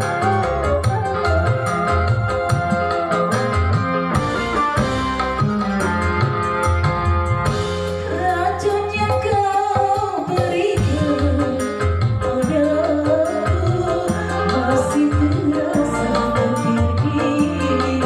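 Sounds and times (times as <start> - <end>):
woman singing: 0.0 - 3.2, 8.0 - 18.0
keyboard backing: 0.0 - 18.0
steady drum beat: 0.0 - 18.0.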